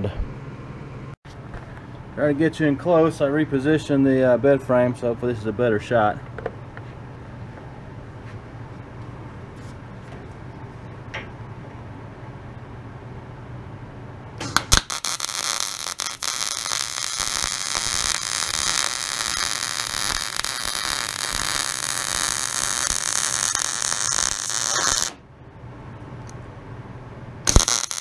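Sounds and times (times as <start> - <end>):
arc welding crackling hiss: 14.4 - 25.2, 27.5 - 28.0.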